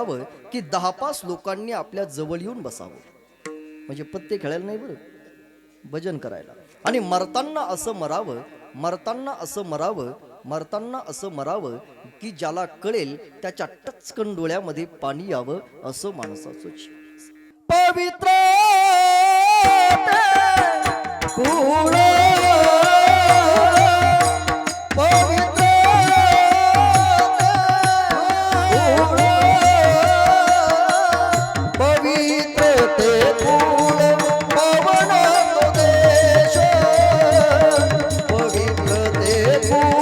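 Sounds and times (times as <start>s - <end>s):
solo voice singing devotional song: 0.0s - 3.1s, 5.8s - 40.0s
hand drums and percussion: 19.6s - 40.0s.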